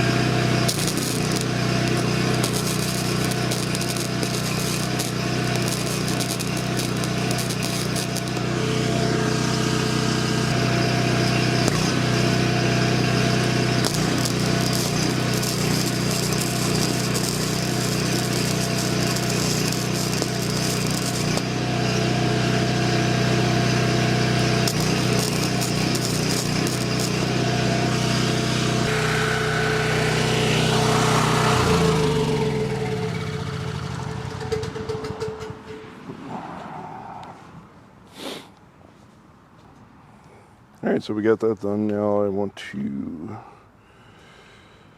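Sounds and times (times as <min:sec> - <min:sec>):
mig welding crackle: 0:00.0 - 0:32.4
generator engine running: 0:00.0 - 0:35.8.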